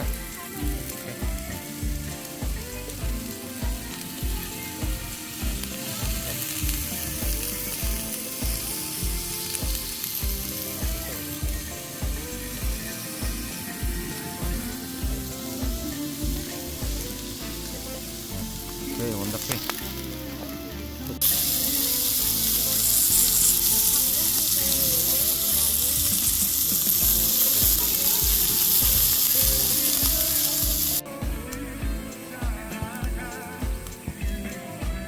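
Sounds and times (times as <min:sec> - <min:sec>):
meat sizzling on a grill: 0:00.0 - 0:35.0
music with a steady beat: 0:00.0 - 0:35.0.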